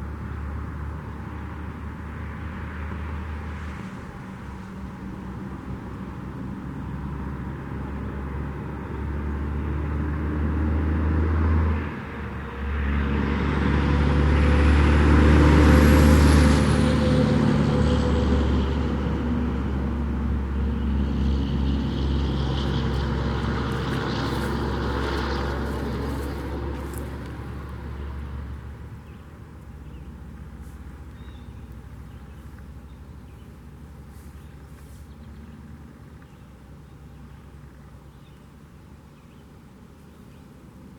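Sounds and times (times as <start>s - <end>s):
vehicle passing: 12.6s - 28.9s.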